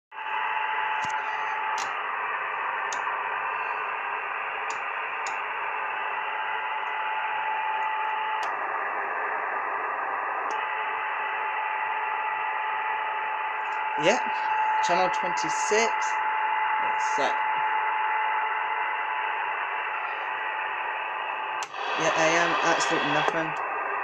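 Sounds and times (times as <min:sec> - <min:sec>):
radio static hiss: 0:00.2 - 0:13.2, 0:13.8 - 0:24.0
steady whistle tone: 0:00.2 - 0:23.8
sharp clicks: 0:04.7 - 0:05.4.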